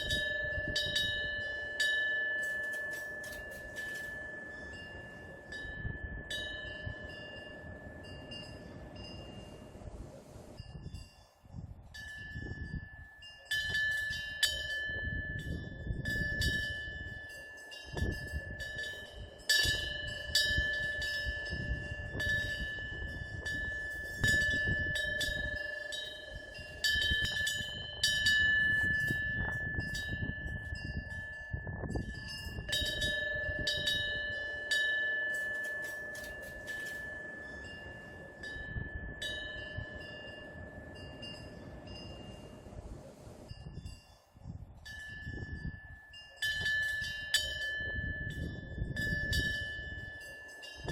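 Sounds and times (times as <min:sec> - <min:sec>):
wind bell ringing: 0:00.0 - 0:50.9
gusty wind rumble: 0:17.9 - 0:34.6.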